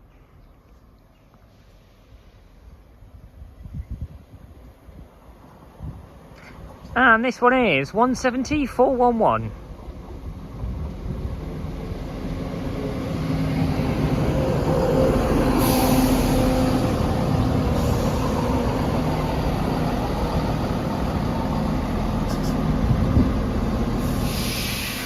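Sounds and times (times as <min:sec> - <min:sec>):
train diesel engines droning: 0:04.8 - 0:25.0
air hiss: 0:14.7 - 0:18.8, 0:23.9 - 0:25.0.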